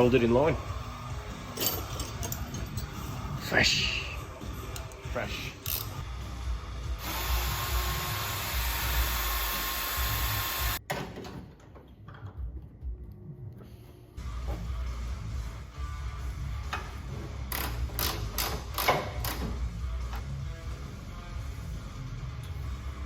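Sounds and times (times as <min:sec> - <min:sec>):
power drill running: 0:07.0 - 0:10.8.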